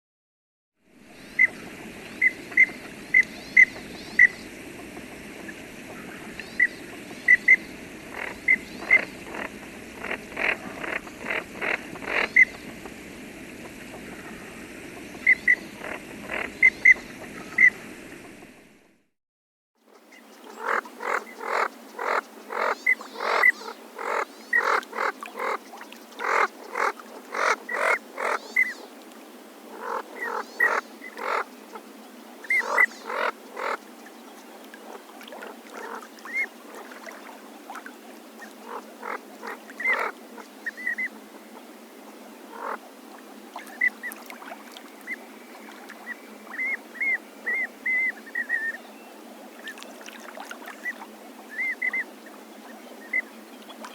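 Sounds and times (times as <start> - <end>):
short sharp waterfowl calls: 8.1 - 12.5, 20.4 - 25.6, 26.2 - 28.9, 29.7 - 31.8, 32.4 - 33.8, 34.8 - 37.2, 38.4 - 41.1, 42.5 - 42.8.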